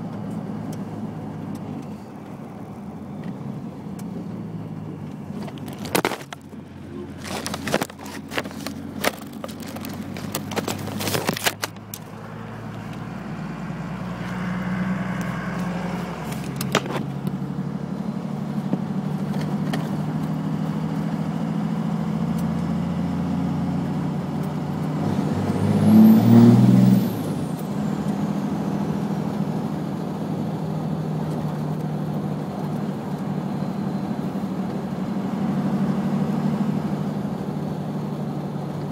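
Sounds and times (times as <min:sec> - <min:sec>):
diesel truck engine drone: 0:00.0 - 0:38.9
sharp clicks and knocks: 0:05.1 - 0:06.6, 0:07.2 - 0:12.1, 0:16.3 - 0:17.4.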